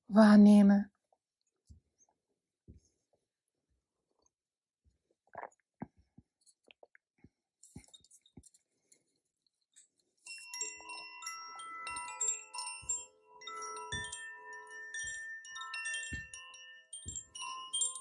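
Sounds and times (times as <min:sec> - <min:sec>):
chimes ringing: 0:10.2 - 0:18.0.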